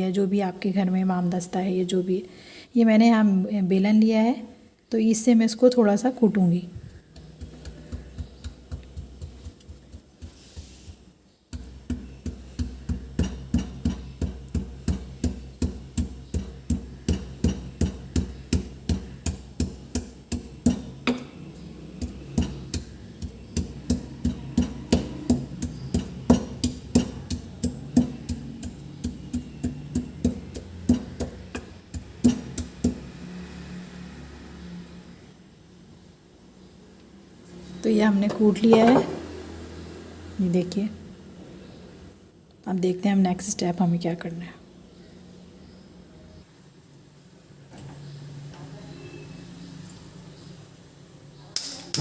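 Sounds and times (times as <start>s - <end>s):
rolling pin pounding ginger: 6.8s - 33.4s.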